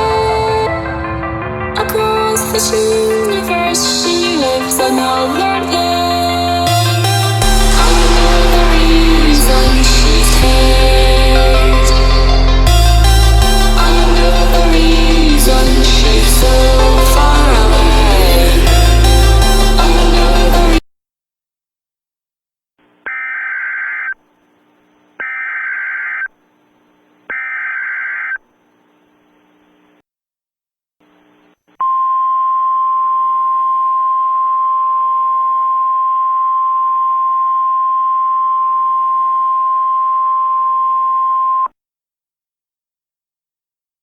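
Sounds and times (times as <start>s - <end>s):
steady attention tone: 7.2s - 10.5s.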